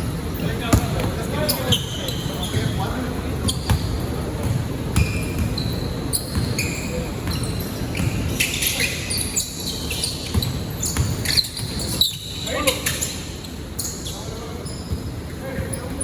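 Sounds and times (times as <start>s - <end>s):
basketball bouncing on court: 0.4s - 2.8s, 3.4s - 8.6s, 10.2s - 12.4s
sneaker squeaks on floor: 0.4s - 16.0s.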